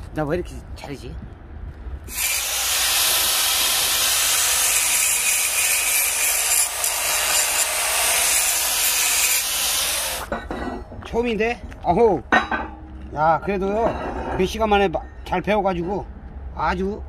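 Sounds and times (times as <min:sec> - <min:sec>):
cutting torch hissing: 0:02.1 - 0:10.3.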